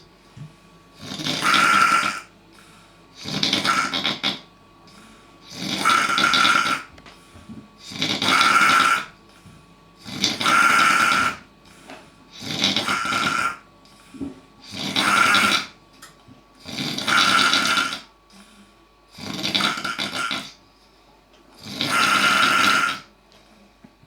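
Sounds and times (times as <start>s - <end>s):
loud snoring: 1.0s - 2.4s, 3.2s - 6.9s, 7.8s - 9.2s, 10.0s - 11.5s, 12.3s - 13.6s, 14.6s - 15.8s, 16.6s - 18.1s, 19.1s - 20.6s, 21.6s - 23.1s
quiet breathing: 2.2s - 3.3s, 4.8s - 5.5s, 7.0s - 7.9s, 11.6s - 12.4s, 13.8s - 14.6s, 18.3s - 19.0s.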